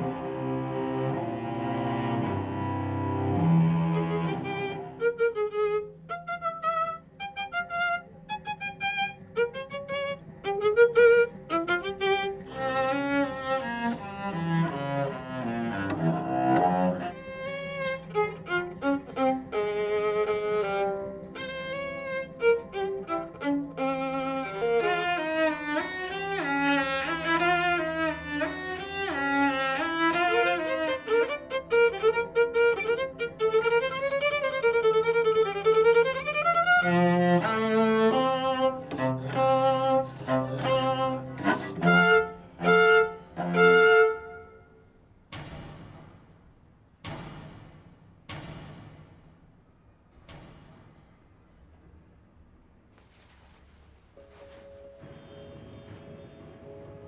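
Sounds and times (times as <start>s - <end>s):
violin melody with sliding notes: 0.0s - 44.8s
low cello and double bass notes: 0.0s - 45.1s, 53.1s - 57.0s.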